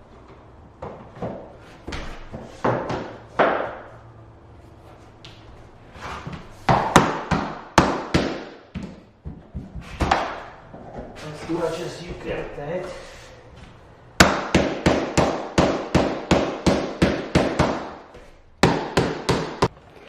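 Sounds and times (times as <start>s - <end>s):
hammer knocking vinyl planks: 0.8s - 3.9s, 6.3s - 11.1s, 14.2s - 19.7s.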